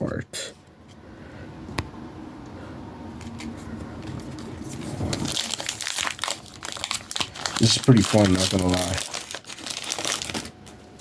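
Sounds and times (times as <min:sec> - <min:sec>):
plastic wrapper crinkling: 0:03.2 - 0:11.0.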